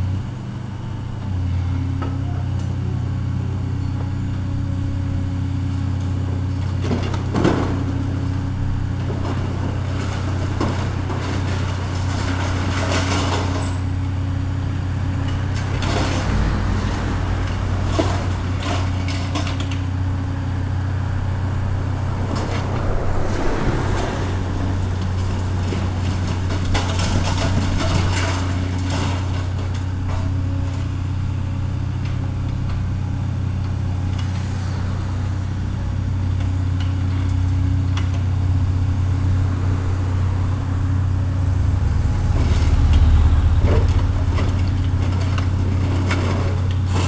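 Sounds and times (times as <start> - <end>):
diesel engine running: 0.0 - 47.0
demolition knocks and crashes: 6.7 - 8.0, 9.0 - 13.9, 15.3 - 19.9, 23.9 - 30.9, 42.3 - 47.0.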